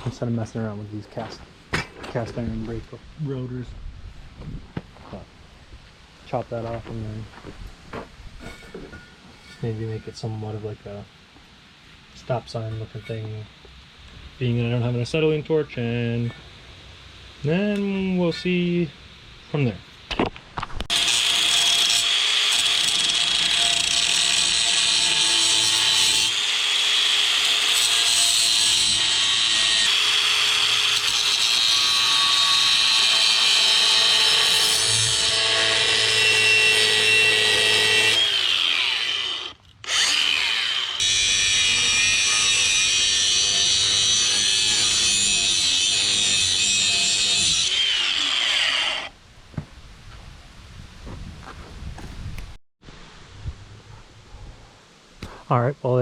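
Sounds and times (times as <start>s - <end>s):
cutoff wheel cutting steel: 20.9s - 49.1s.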